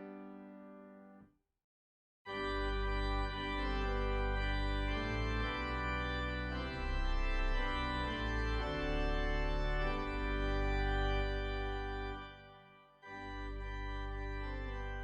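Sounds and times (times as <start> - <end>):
organ chords: 2.3 - 15.0.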